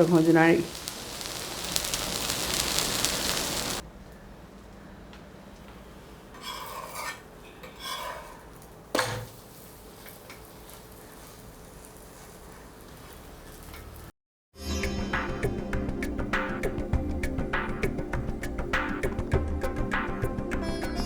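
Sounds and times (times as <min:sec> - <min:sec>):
pancake sizzling on griddle: 0:00.0 - 0:03.8, 0:06.4 - 0:14.1
scraping: 0:06.3 - 0:14.1.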